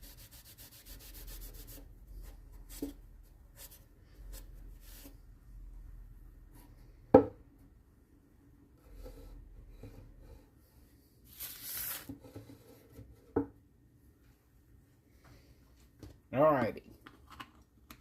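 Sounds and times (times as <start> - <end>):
knock on workbench: 7.1 - 7.4.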